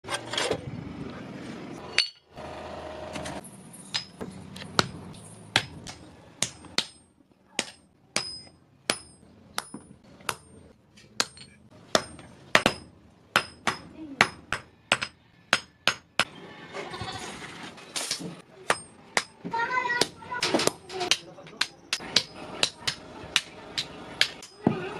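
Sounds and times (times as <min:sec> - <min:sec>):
hammer striking steel on anvil: 0:01.9 - 0:02.3, 0:03.9 - 0:10.6, 0:11.2 - 0:16.3, 0:18.7 - 0:19.4, 0:20.0 - 0:24.8.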